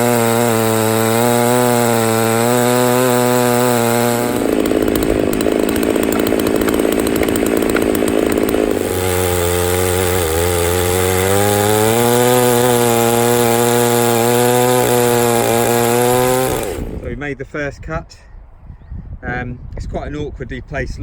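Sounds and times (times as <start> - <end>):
chainsaw cutting through log: 0.0 - 17.2.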